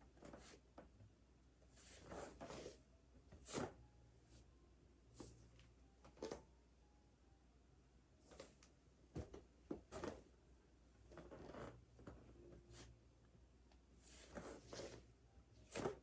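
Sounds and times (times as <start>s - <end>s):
clothing rustling against a mat: 14.0s - 15.1s.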